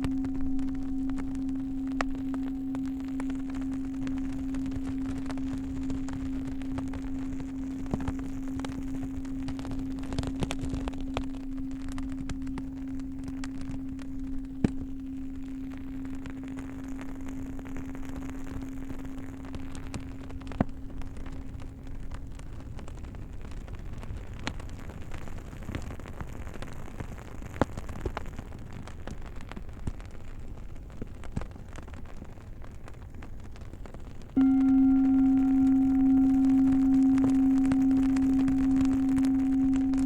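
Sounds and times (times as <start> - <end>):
singing bowl ringing: 0.0 - 20.4, 34.4 - 40.0
campfire crackling and popping: 0.0 - 34.6.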